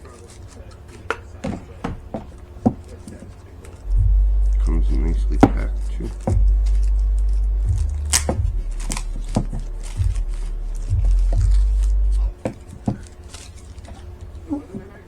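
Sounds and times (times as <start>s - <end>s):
microphone handling rumble: 3.8s - 13.3s.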